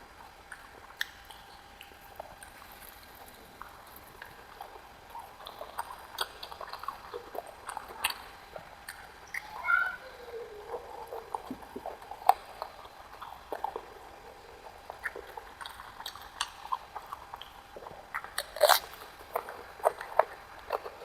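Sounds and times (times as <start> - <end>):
chewing food: 0.0 - 21.0
wet mouth clicks and smacks: 11.2 - 21.0.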